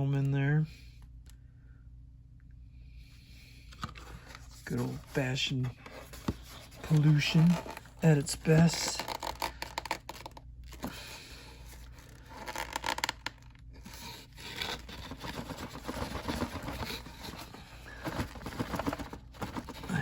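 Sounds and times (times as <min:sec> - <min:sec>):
small crackles: 0:08.6 - 0:11.0, 0:11.8 - 0:14.8
styrofoam scraping cardboard: 0:13.8 - 0:20.0.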